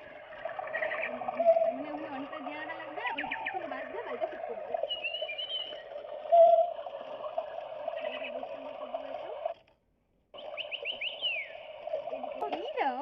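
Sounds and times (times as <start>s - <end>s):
steady hum: 0.0s - 13.0s
toy bird chirping electronically: 4.8s - 6.8s, 8.0s - 9.2s, 10.4s - 13.0s.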